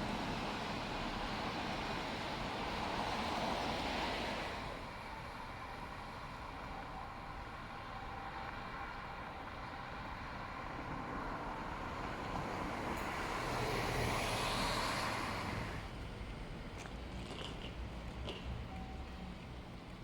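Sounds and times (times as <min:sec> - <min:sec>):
road vehicle passing by: 0:10.2 - 0:19.8.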